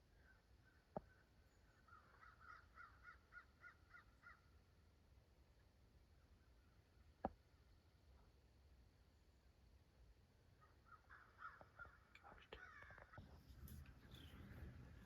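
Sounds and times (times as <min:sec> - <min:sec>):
faint bird calling: 0:00.1 - 0:04.6, 0:10.6 - 0:15.0.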